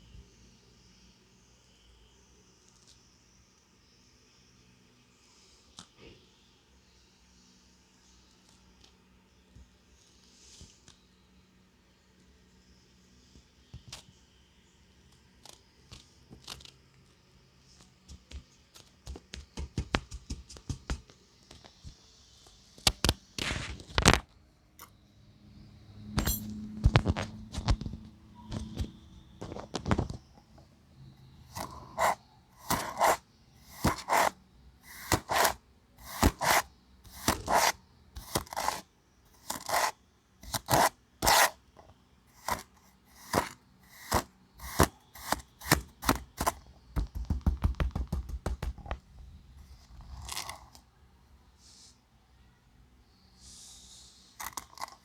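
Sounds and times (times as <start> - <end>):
kinetic sand being scraped: 31.5 - 38.8, 39.4 - 41.6, 42.4 - 46.6.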